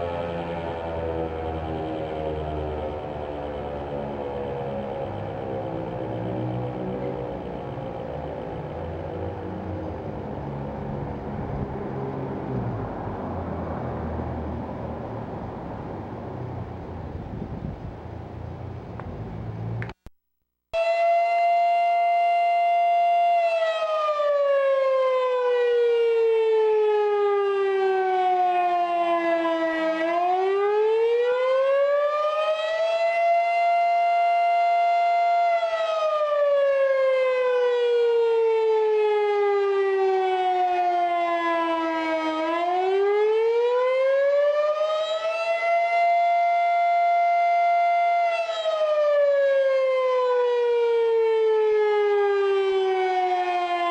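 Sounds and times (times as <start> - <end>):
warning siren wailing: 0.0 - 19.8, 20.8 - 53.9.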